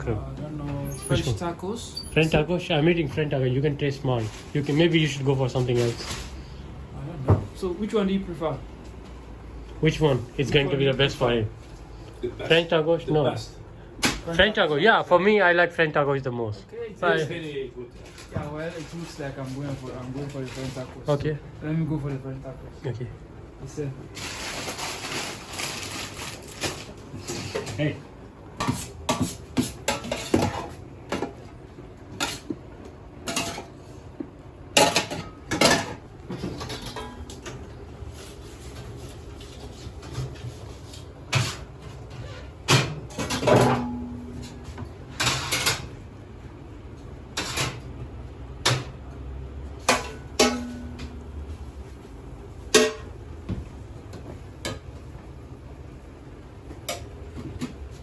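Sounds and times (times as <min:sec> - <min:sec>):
clatter of dishes and utensils: 0:24.2 - 0:28.0, 0:28.6 - 0:31.5, 0:32.1 - 0:32.6, 0:33.2 - 0:33.8, 0:34.7 - 0:46.0, 0:47.3 - 0:48.0, 0:49.8 - 0:51.3, 0:52.7 - 0:53.1.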